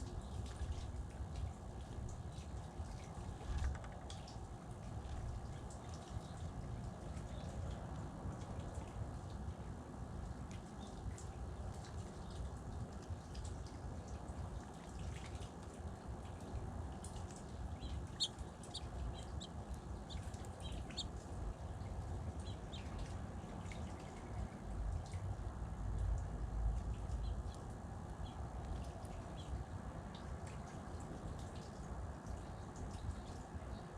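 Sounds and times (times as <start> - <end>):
steady low rumble: 15.6 - 31.4
small birds chirping: 16.4 - 24.6, 26.8 - 30.7.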